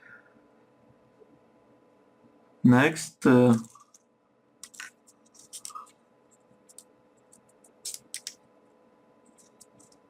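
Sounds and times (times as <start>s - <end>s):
paper pieces clicking and rustling: 4.6s - 6.0s, 6.6s - 8.4s.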